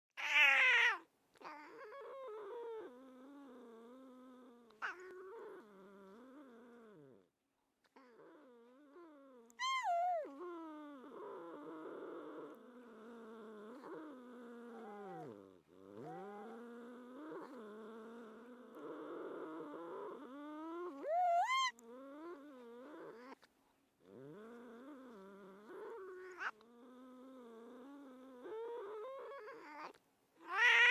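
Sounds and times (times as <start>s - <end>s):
cat yowling: 0.2s - 2.0s, 9.6s - 10.4s, 20.9s - 21.8s, 29.3s - 30.9s
cat growling yowl: 0.2s - 7.2s, 8.0s - 23.4s, 24.0s - 30.9s
cat rising cry: 30.4s - 30.9s.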